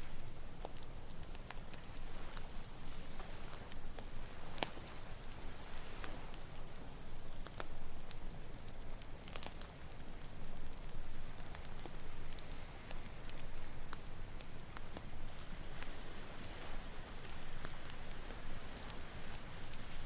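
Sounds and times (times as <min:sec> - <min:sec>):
campfire crackling and popping: 0:00.0 - 0:20.0.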